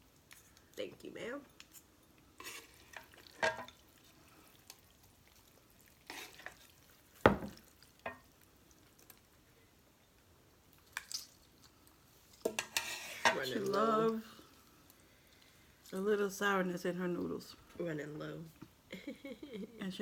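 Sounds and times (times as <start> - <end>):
noodle slurping and chewing: 2.4 - 9.4.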